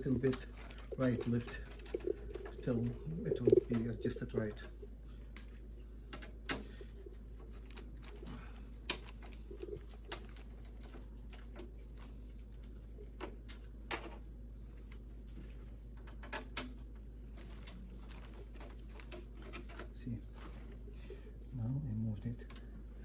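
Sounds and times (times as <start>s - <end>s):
steady low hum: 0.0s - 23.0s
computer parts clicking and knocking: 16.0s - 16.9s.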